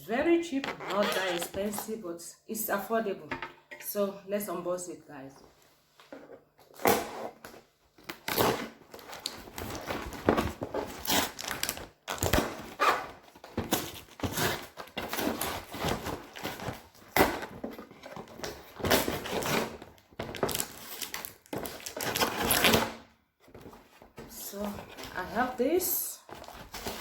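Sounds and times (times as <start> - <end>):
cardboard and plastic rustling: 6.0 - 27.0.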